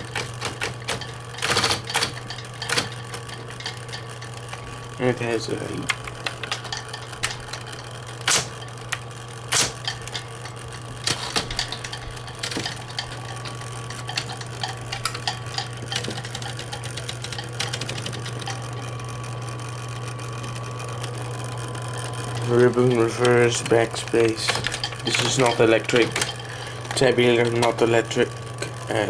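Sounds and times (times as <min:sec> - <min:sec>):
typewriter mechanism clicking: 0:00.0 - 0:04.6, 0:05.8 - 0:18.8, 0:22.4 - 0:28.0
typewriter motor humming: 0:00.0 - 0:29.0.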